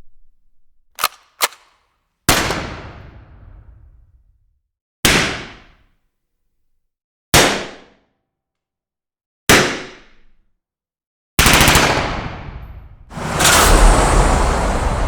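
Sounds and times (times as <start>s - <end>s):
automatic gunfire burst: 13.1s - 14.8s.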